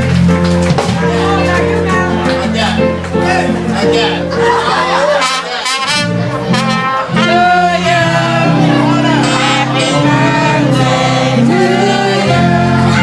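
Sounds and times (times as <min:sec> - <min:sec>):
live band music: 0:00.0 - 0:13.0
person singing: 0:07.0 - 0:13.0.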